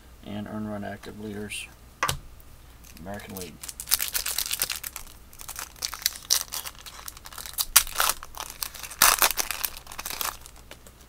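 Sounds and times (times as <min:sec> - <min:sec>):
plastic wrapper crinkling and tearing: 0:02.8 - 0:11.0.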